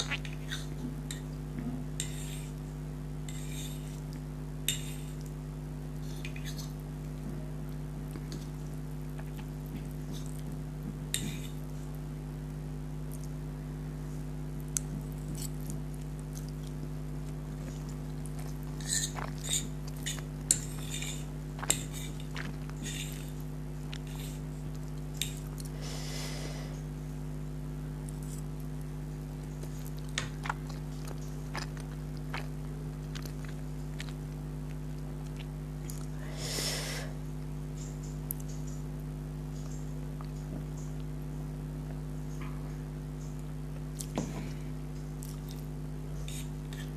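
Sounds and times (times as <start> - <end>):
low electrical hum: 0.0 - 46.9
chewing and mouth sounds: 14.7 - 25.7, 29.4 - 36.2, 45.2 - 46.9
noodle slurping: 18.4 - 24.4.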